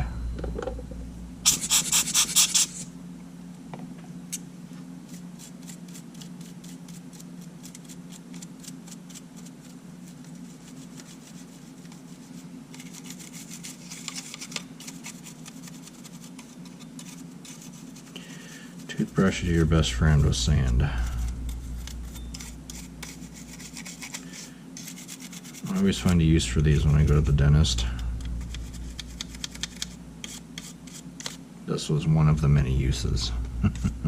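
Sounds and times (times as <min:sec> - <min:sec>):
toothbrush scrubbing: 0:05.1 - 0:27.6, 0:28.3 - 0:31.4.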